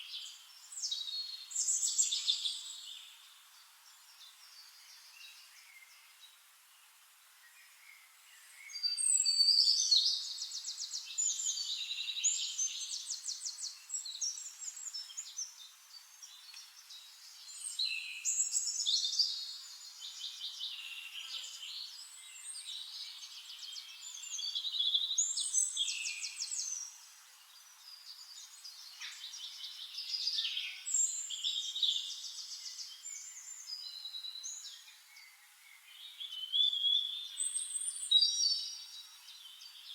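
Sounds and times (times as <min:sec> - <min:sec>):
songbirds trilling and chirping: 0:07.3 - 0:39.9.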